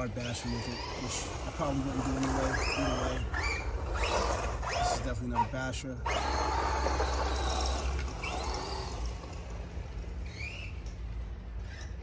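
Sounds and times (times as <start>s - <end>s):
electric motor whine: 0.0s - 5.3s, 6.0s - 10.6s
toy car tyres and drivetrain rushing: 0.0s - 12.0s.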